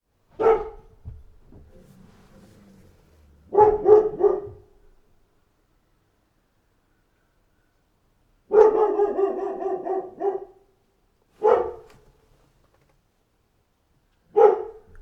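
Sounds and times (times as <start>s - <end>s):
dog barking: 0.4s - 5.0s, 8.5s - 10.7s, 11.4s - 12.0s, 14.3s - 15.0s.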